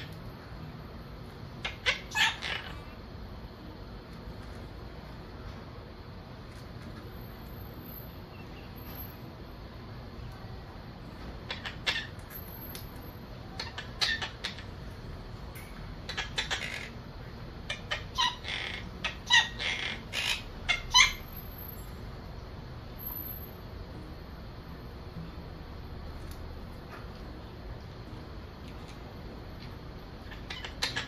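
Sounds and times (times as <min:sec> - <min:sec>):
parrot calling: 0:01.5 - 0:03.0, 0:11.3 - 0:15.0, 0:16.0 - 0:21.8, 0:29.6 - 0:31.0.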